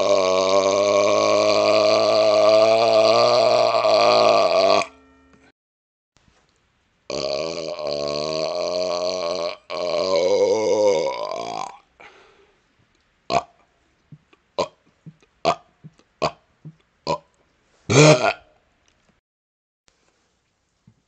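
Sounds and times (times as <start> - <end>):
man burping: 0.0 - 4.9, 7.1 - 11.9, 13.3 - 13.6, 14.6 - 17.3, 17.9 - 18.5.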